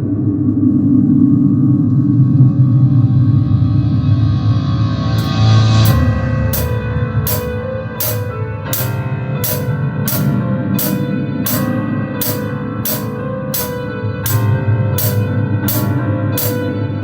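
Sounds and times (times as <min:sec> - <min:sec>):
drum kit playing: 0:05.2 - 0:16.8.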